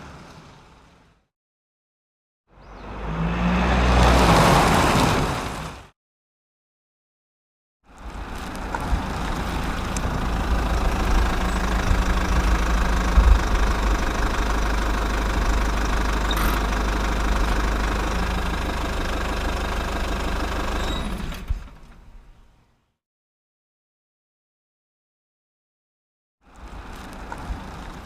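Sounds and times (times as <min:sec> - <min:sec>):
loud engine-like rumble: 0:07.9 - 0:22.6.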